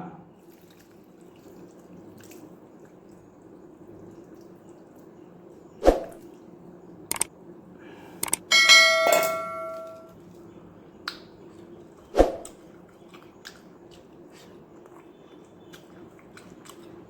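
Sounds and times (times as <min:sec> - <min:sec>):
liquid trickling onto rice: 0:00.4 - 0:07.1
light clicks: 0:08.2 - 0:08.4.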